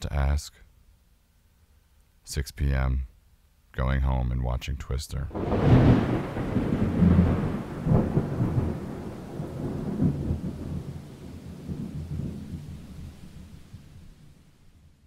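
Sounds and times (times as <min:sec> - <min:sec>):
thunder rumbling: 0:05.3 - 0:14.2
rain: 0:05.3 - 0:15.0.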